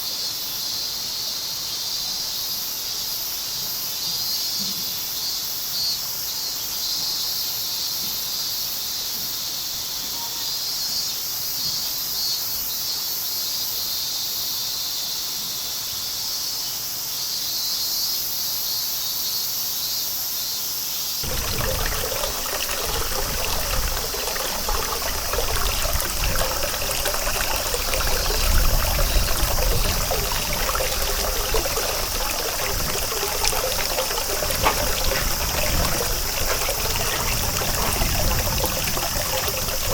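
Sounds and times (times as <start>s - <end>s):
cicadas droning: 16.0s - 39.9s
running water: 21.2s - 39.9s.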